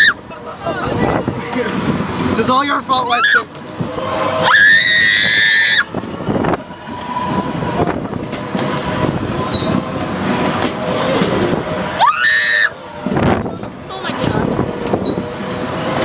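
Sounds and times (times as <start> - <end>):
carnival ride machinery rumbling: 0.0 - 16.0
high-pitched rising squeal: 4.1 - 10.0, 11.9 - 12.9.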